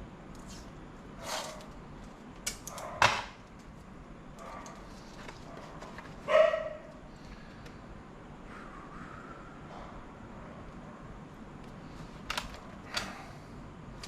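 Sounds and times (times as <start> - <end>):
plastic and metal parts clacking: 11.6 - 13.2.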